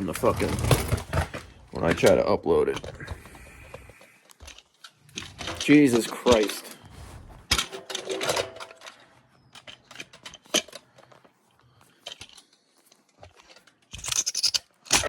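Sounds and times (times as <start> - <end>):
rustling scrape: 5.0 - 9.2
small objects clicking and rattling: 7.5 - 15.0.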